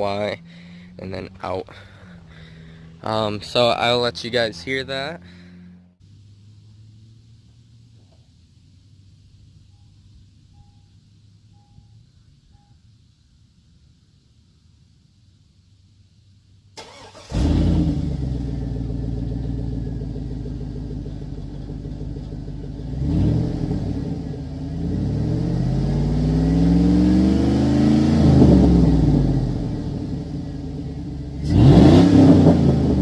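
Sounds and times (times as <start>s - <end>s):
car engine starting and revving: 16.8s - 33.0s.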